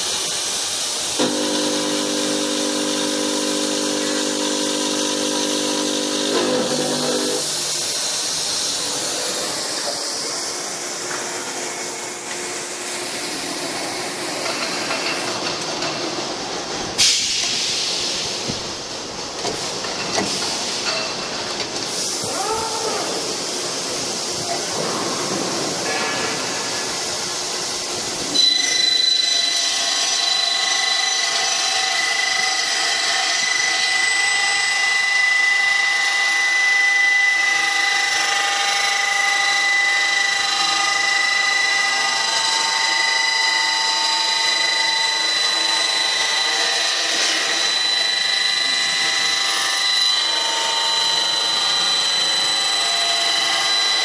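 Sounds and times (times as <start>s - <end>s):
high-speed cutting tool whine: 0.0s - 15.4s, 25.7s - 54.0s.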